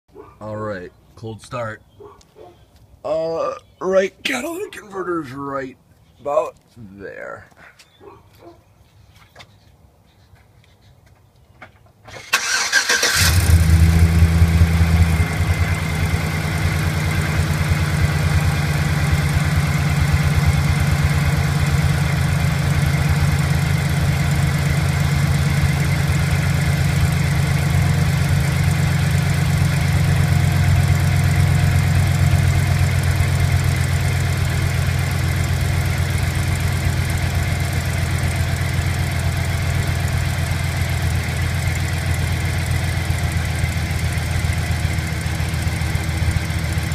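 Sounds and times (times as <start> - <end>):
car engine starting and idling: 12.1 - 46.9
engine ticking: 12.4 - 46.9.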